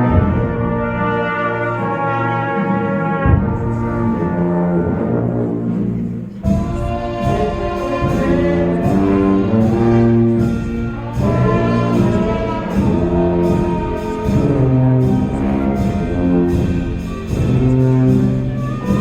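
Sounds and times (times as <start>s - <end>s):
brass sustained chords: 0.0s - 19.0s
concert band playing: 0.0s - 19.0s.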